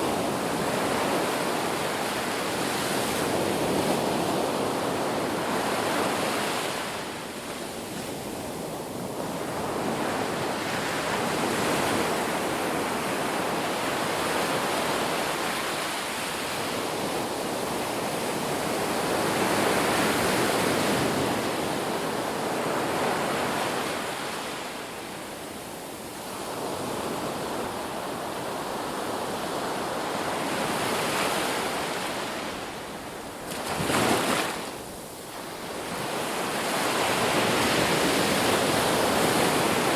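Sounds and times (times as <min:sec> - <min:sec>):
ocean surf washing: 0:00.0 - 0:39.9
wave crashing: 0:33.5 - 0:34.8.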